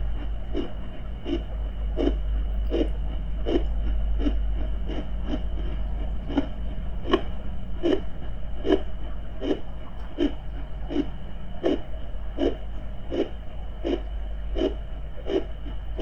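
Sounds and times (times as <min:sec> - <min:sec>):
low underwater-style rumble: 0:00.0 - 0:16.0.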